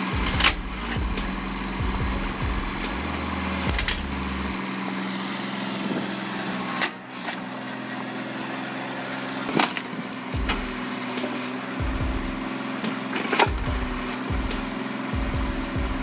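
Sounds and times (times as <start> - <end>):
sharp knocks: 0.0 - 4.5, 10.3 - 16.0
wood splitter engine running: 0.0 - 16.0.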